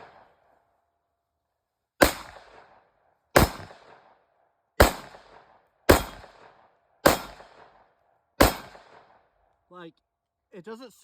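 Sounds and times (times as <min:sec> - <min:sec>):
bullets hitting steel plate: 0:02.0 - 0:02.7, 0:04.8 - 0:05.2, 0:05.9 - 0:07.7, 0:08.4 - 0:09.0
pistol shots with echo: 0:02.0 - 0:04.2, 0:04.8 - 0:09.3.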